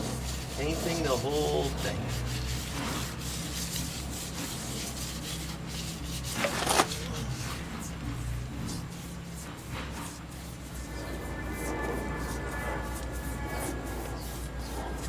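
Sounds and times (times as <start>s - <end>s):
paintbrush bristles rubbing on metal: 0.0s - 15.0s
steady low hum: 0.0s - 15.0s.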